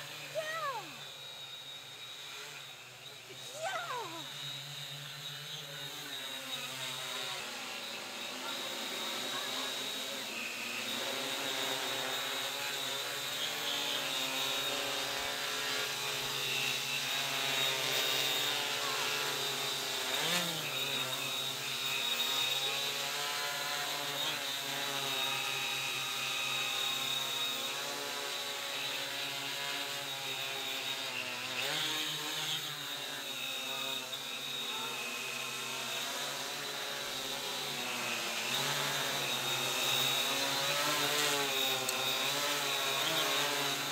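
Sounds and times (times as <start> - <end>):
quadcopter propellers buzzing: 0.0 - 43.9.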